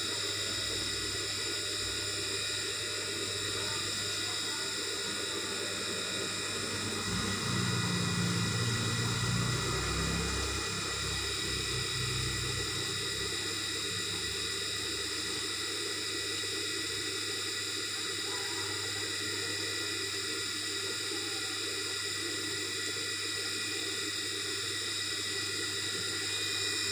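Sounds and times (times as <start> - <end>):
high whining tones: 2.7 - 14.5.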